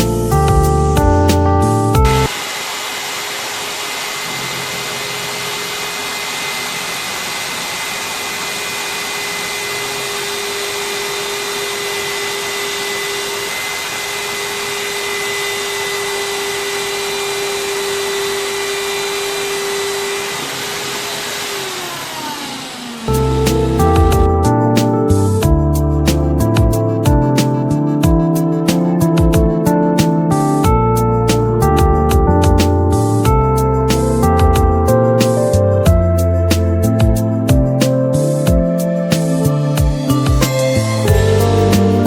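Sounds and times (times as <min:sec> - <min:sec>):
small electric motor whining: 0:02.2 - 0:24.2.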